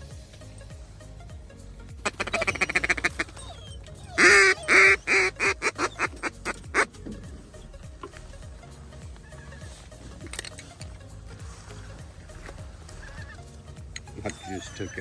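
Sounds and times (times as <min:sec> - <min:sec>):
duck call quacks: 0:02.1 - 0:03.4, 0:04.2 - 0:06.9
duck call chattering: 0:02.1 - 0:07.0.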